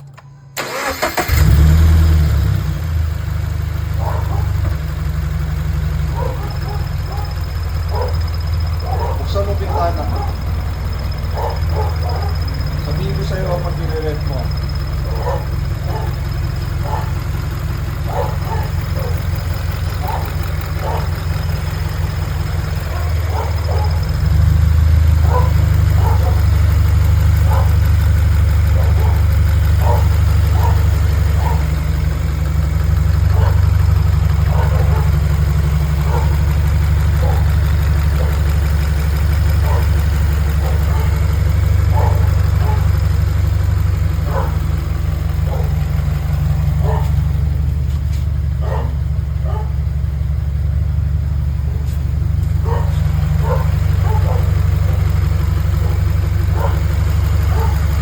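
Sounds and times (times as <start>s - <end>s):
car engine idling: 0.0s - 58.0s.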